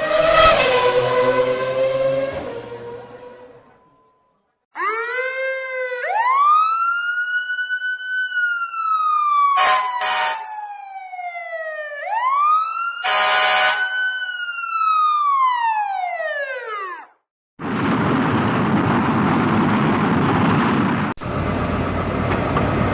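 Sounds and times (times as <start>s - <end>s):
emergency siren wailing: 0.0s - 17.2s.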